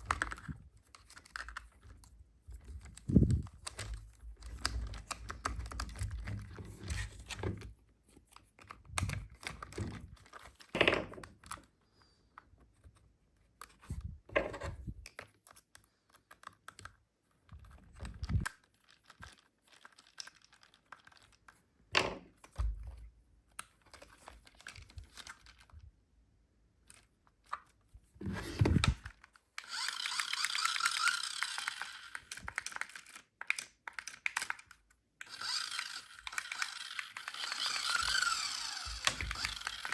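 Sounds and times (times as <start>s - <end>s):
plastic clicks and knocks: 36.3s - 39.9s.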